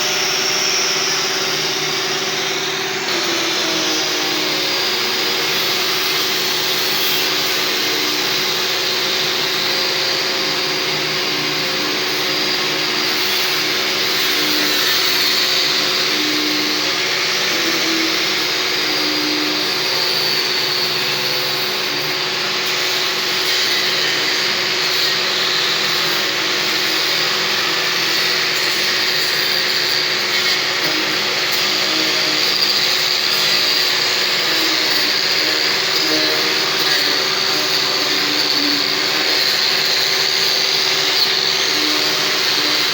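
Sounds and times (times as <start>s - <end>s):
electric grinder running: 0.0s - 42.9s.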